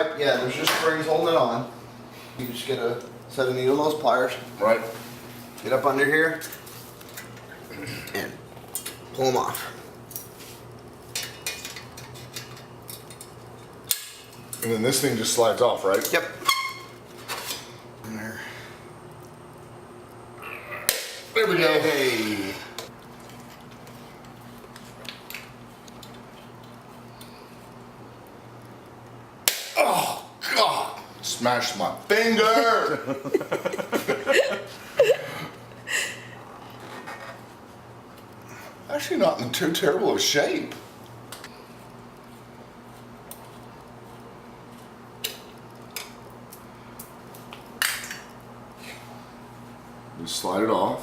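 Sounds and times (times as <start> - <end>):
steady low hum: 0.0 - 51.0
metal tools clinking: 11.1 - 13.7.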